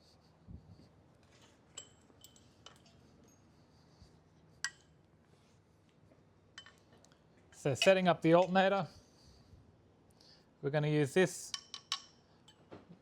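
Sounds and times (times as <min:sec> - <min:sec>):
metallic clinks of bolts and tools: 0:01.8 - 0:03.0.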